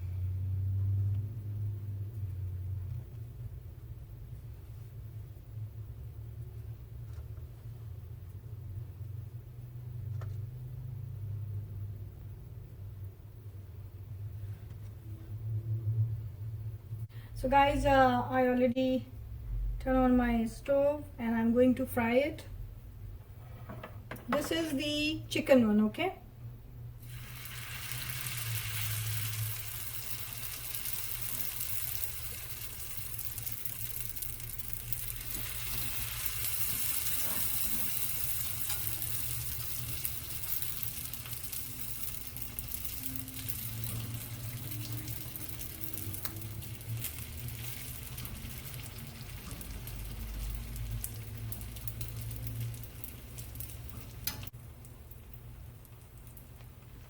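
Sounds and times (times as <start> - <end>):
food deep-frying in oil: 27.0 - 57.0.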